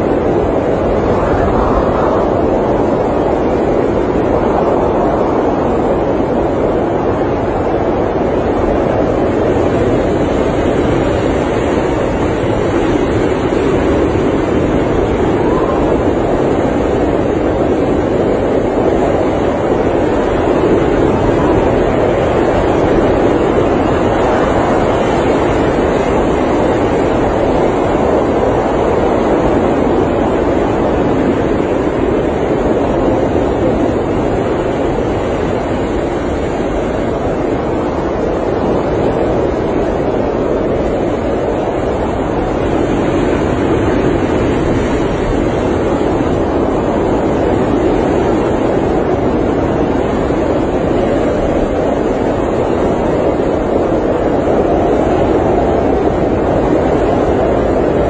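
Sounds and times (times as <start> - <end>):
blizzard wind rushing: 0.0 - 58.0.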